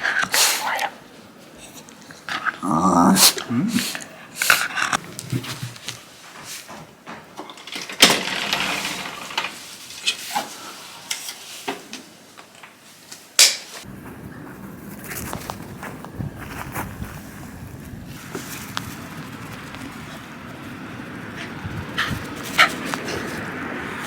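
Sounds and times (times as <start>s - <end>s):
dog grumbling: 1.6s - 5.0s, 19.7s - 23.4s
rustling: 12.8s - 24.0s.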